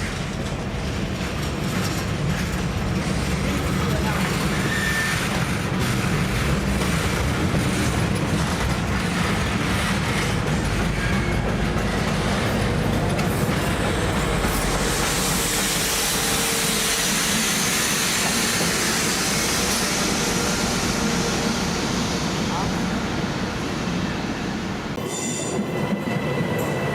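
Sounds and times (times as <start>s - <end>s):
train rumbling past: 0.0s - 26.9s
hiss of wheels on rail: 11.5s - 25.1s.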